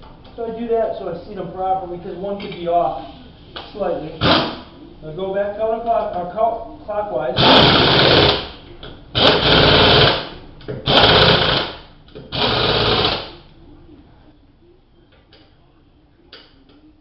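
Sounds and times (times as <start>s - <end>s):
power wrench spinning lug nuts: 7.4s - 8.5s, 9.2s - 10.2s, 10.9s - 13.3s.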